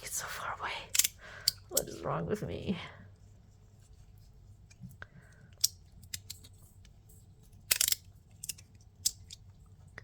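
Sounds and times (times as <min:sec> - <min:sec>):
plastic pieces clicking: 0:07.6 - 0:09.4.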